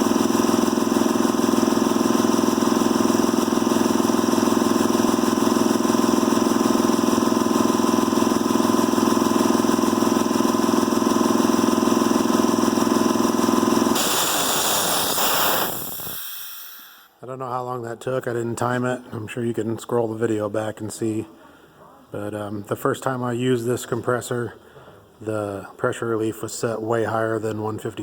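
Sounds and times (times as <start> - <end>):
motor winding down: 0.0 - 17.0
air compressor running: 0.0 - 17.2
air hissing: 13.9 - 17.2.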